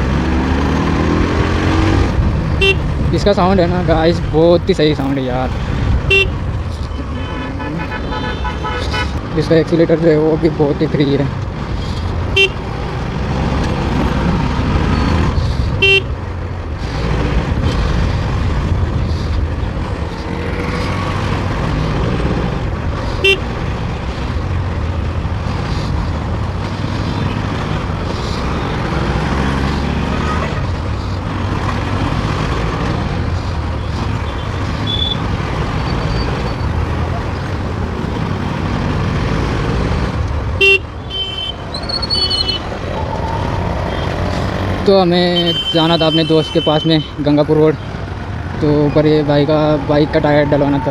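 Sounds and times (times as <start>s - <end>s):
horn toots: 0.0s - 3.4s, 5.0s - 9.3s, 11.9s - 14.3s, 15.8s - 16.1s, 23.2s - 23.5s, 30.0s - 30.8s, 33.8s - 47.2s
motorcycle engine running: 0.0s - 9.3s, 11.7s - 14.8s
road traffic: 0.0s - 50.9s.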